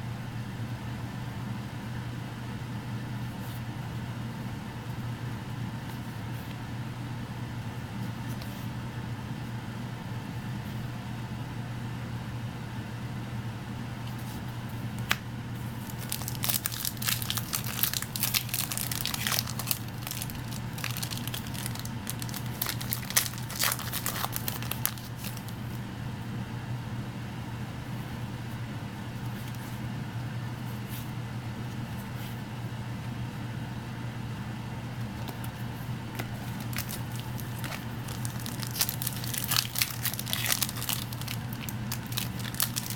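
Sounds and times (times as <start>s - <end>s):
foil pack tearing and crinkling: 15.8s - 25.6s, 36.2s - 42.9s.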